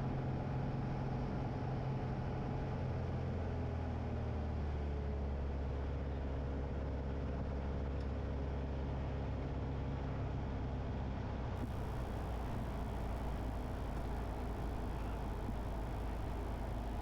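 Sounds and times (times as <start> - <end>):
airplane engine and propeller droning: 11.6 - 17.0.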